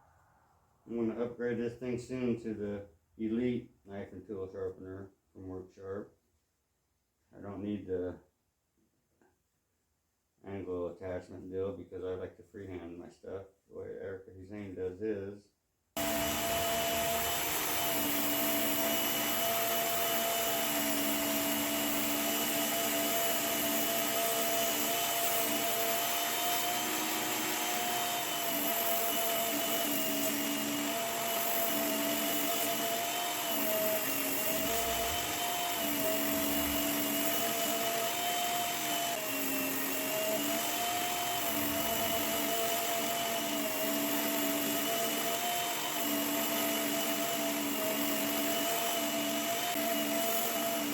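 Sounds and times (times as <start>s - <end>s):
belt sharpener motor whine: 16.0s - 50.9s.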